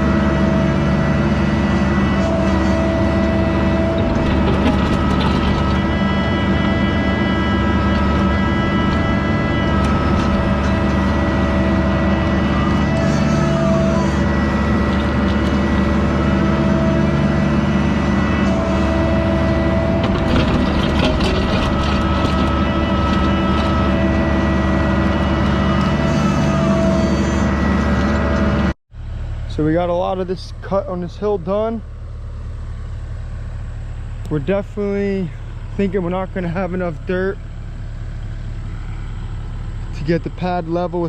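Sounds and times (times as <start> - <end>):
whining tone: 0.0 - 28.8
diesel engine under load: 0.0 - 41.0
clicks and clanks: 3.9 - 6.1, 20.0 - 23.8.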